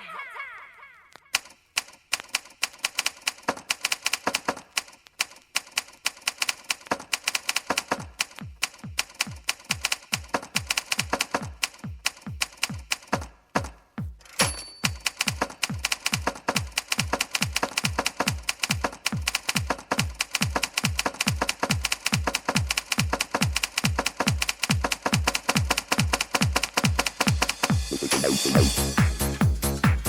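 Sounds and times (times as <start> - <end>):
typewriter keystroke clicks: 1.3 - 13.3, 14.9 - 27.2
deep kick drum: 27.7 - 30.0.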